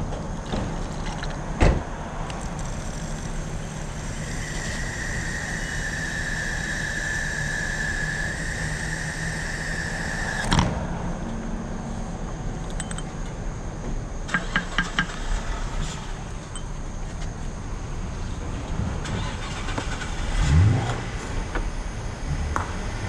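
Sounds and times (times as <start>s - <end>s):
high whine: 2.3s - 14.3s.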